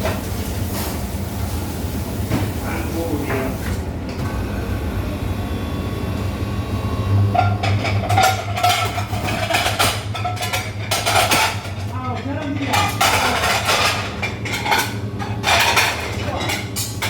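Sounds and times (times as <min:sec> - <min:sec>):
low machine hum: 0:00.0 - 0:17.0
dishes clattering and clinking: 0:07.3 - 0:17.0.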